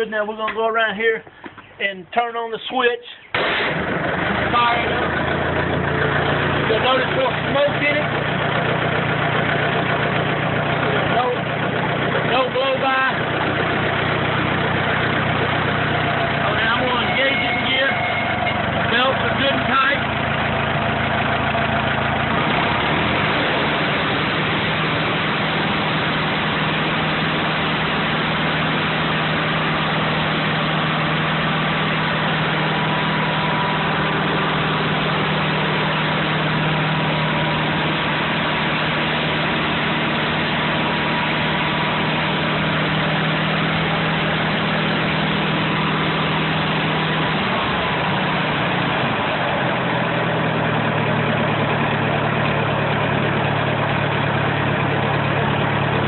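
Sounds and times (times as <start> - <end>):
stump grinder engine running: 3.4 - 56.0.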